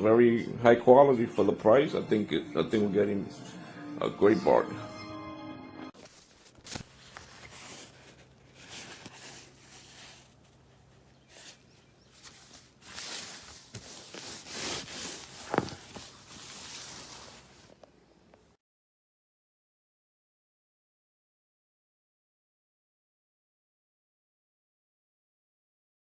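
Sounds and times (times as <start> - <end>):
rustling and scuffing: 6.0 - 18.5.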